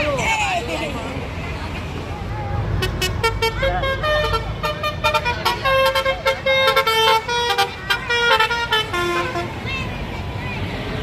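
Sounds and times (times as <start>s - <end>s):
low rumble of passing traffic: 0.0s - 11.0s
bus horn playing melody: 2.8s - 9.6s.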